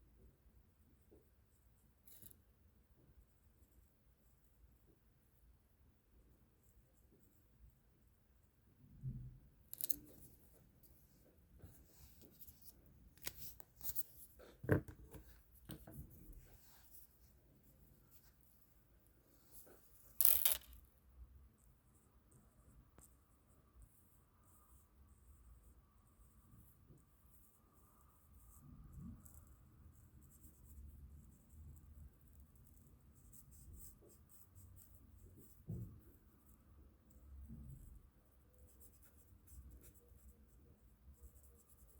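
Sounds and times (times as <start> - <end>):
coloring strokes on paper: 15.2 - 20.1.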